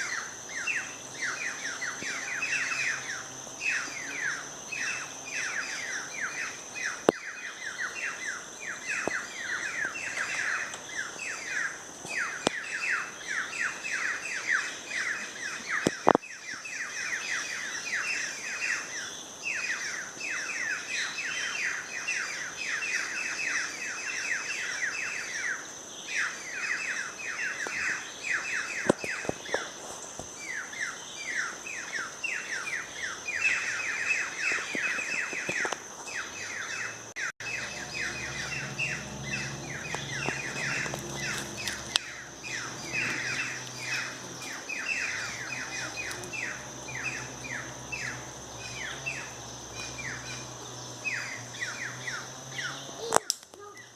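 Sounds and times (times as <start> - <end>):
birds chirping: 0.0 - 53.9
steady high-pitched tone: 36.4 - 51.9
sharp clicks: 53.1 - 53.6.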